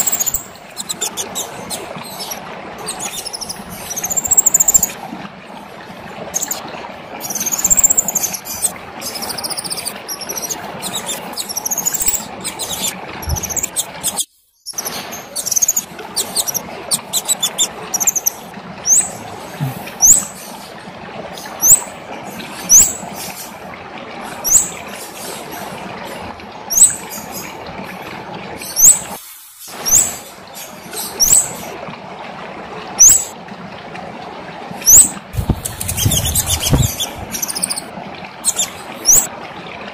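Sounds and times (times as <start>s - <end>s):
bird twittering: 0.0s - 5.0s, 6.3s - 6.6s, 7.2s - 19.2s, 20.0s - 20.3s, 33.0s - 33.3s, 34.9s - 39.3s.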